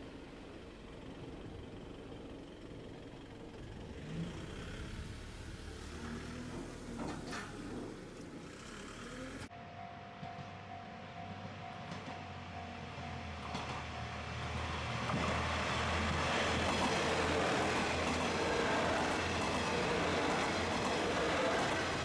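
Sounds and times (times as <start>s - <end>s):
vehicle rumble with engine: 0.0s - 9.5s
level-crossing warning bell: 9.5s - 22.0s.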